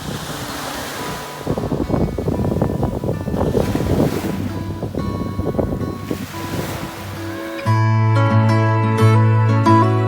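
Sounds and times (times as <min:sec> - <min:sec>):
sea waves washing on beach: 0:00.0 - 0:07.7
wind buffeting microphone: 0:00.0 - 0:07.7.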